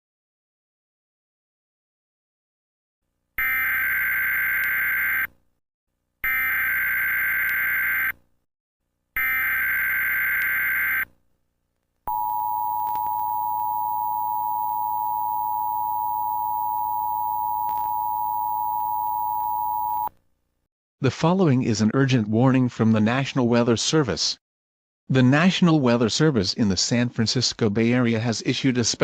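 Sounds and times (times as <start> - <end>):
digital data tone bursts: 12.1 - 20.1
two-tone attention signal: 12.1 - 20.1.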